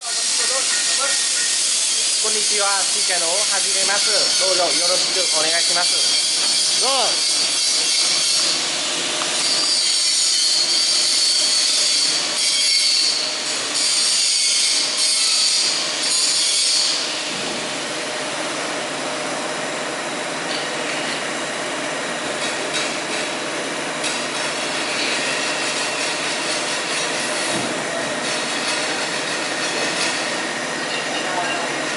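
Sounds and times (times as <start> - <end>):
welding arc crackling hiss: 0.0 - 18.5.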